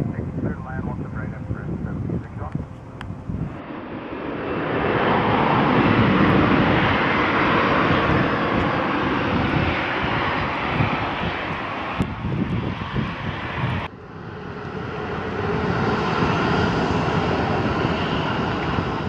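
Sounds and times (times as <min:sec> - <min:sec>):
aircraft engine passing: 0:00.0 - 0:19.0.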